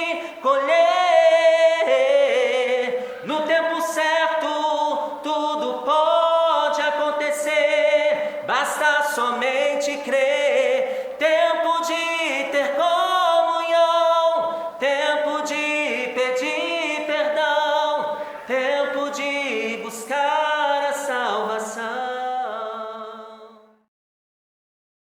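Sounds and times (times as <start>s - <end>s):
person singing gospel: 0.0s - 23.9s.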